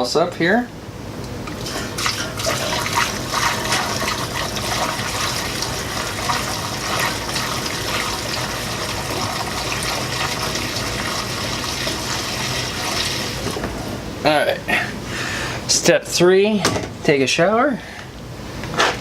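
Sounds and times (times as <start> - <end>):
gasoline pouring through a funnel: 1.6 - 13.8.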